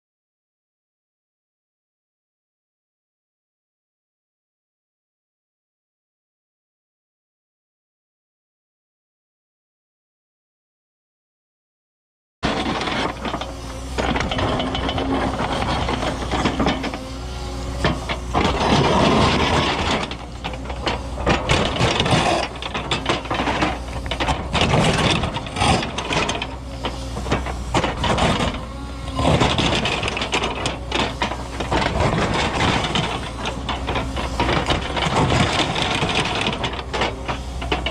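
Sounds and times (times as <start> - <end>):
excavator diesel engine working: 12.4 - 37.9
steel grinding on rock: 12.4 - 37.9.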